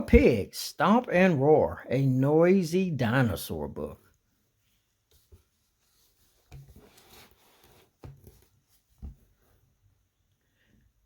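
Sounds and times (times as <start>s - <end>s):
book pages rustling: 5.0s - 9.6s.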